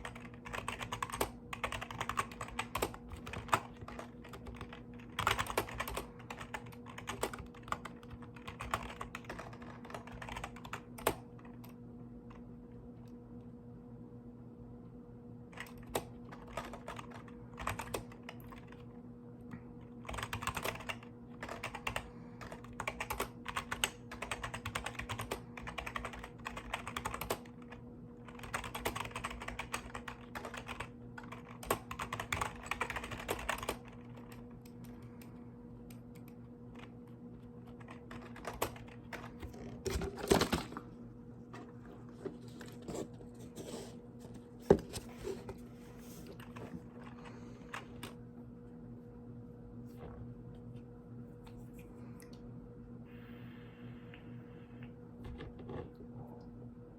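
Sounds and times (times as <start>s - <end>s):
mechanical keyboard typing: 0.0s - 11.8s, 15.5s - 18.9s, 19.8s - 35.3s, 37.6s - 40.8s
steady low hum: 0.0s - 56.9s.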